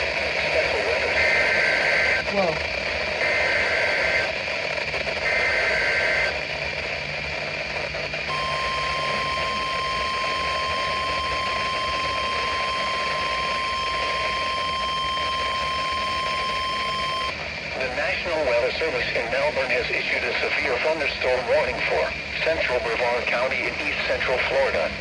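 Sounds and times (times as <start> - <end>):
radio hiss: 0.0 - 25.0
steady warning alarm tone: 8.3 - 17.4.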